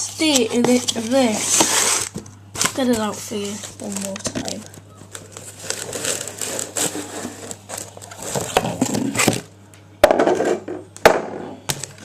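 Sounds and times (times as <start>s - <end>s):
rustling and scraping: 0.0s - 9.5s.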